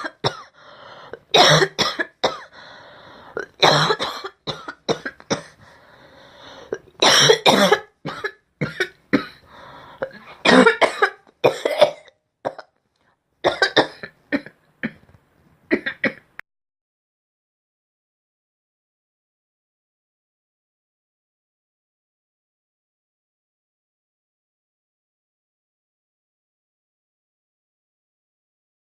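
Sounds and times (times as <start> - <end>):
person coughing: 0.0 - 0.6, 1.2 - 2.5, 3.3 - 5.6, 6.7 - 9.4, 10.0 - 12.8, 13.5 - 15.1, 15.7 - 16.3.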